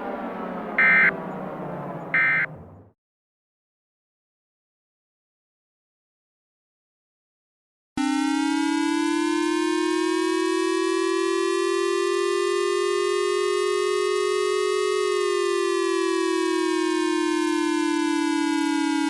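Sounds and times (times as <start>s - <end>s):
electronic siren wail: 0.0s - 2.9s, 8.0s - 19.0s.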